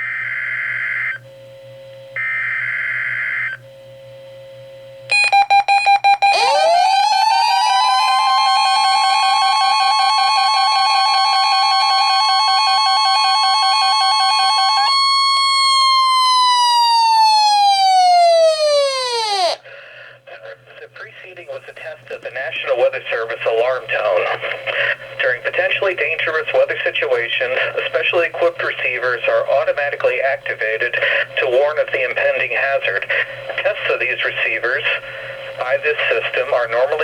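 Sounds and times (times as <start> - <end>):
siren-like sweeping tone: 6.2 - 19.6.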